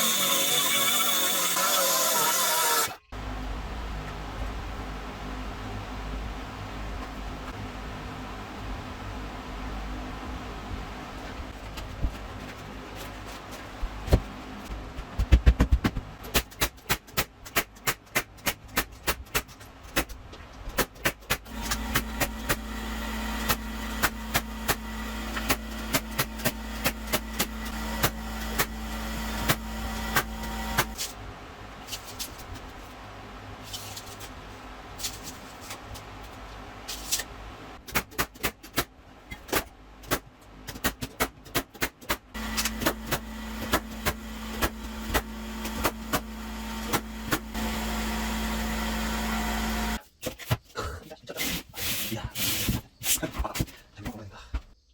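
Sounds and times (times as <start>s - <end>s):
motor hum: 21.5s - 31.1s, 42.4s - 50.0s.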